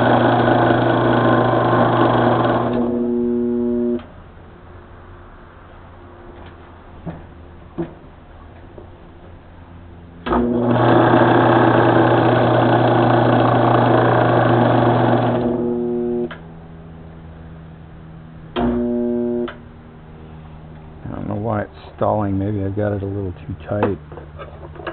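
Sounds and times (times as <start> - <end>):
lathe motor humming: 0.0 - 4.0, 10.3 - 16.3.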